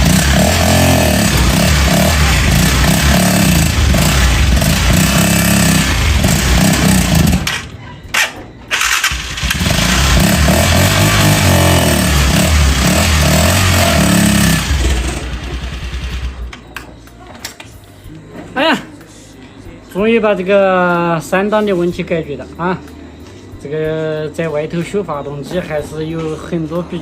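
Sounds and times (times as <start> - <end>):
motorcycle engine running: 0.0 - 7.8, 8.7 - 16.7.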